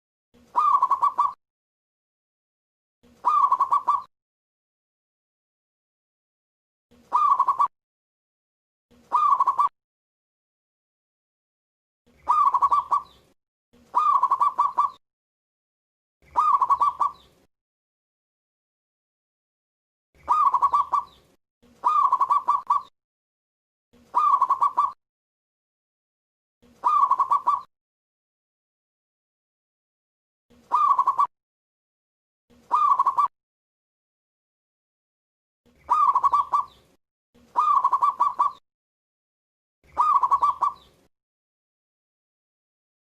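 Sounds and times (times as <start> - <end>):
dove cooing: 0.5 - 1.4, 3.1 - 4.1, 7.0 - 7.7, 9.1 - 9.7, 12.2 - 13.2, 13.9 - 15.0, 16.2 - 17.2, 20.2 - 21.1, 21.8 - 22.9, 24.0 - 25.0, 26.7 - 27.7, 30.6 - 31.3, 32.6 - 33.3, 35.8 - 36.7, 37.5 - 38.6, 39.9 - 40.9.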